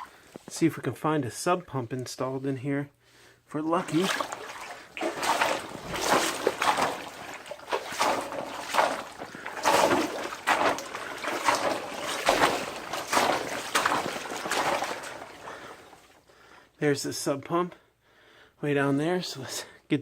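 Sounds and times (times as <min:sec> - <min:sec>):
water sloshing and splashing: 0:00.0 - 0:00.5, 0:03.7 - 0:16.2.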